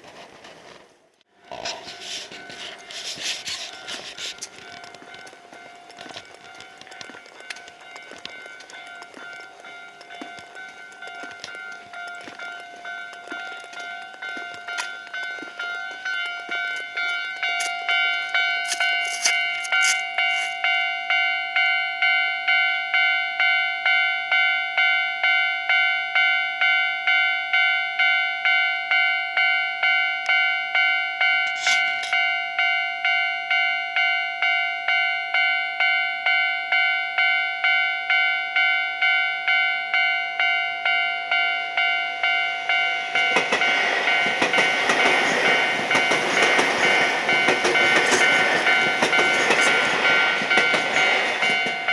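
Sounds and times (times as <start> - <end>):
train wheel noise: 0.0 - 20.8, 41.3 - 51.9
level crossing bell dinging: 2.4 - 51.9.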